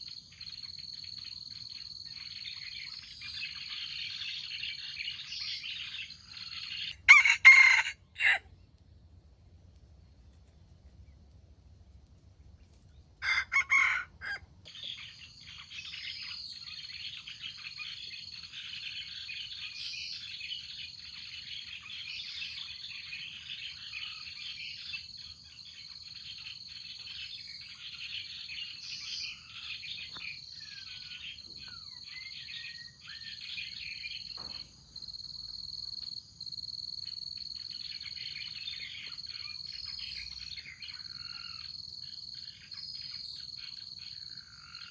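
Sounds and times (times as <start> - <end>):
insects chorus: 0.0 - 8.4, 13.2 - 44.9
songbirds chirping: 0.0 - 44.9
rooster crowing: 6.8 - 8.5, 13.2 - 14.5.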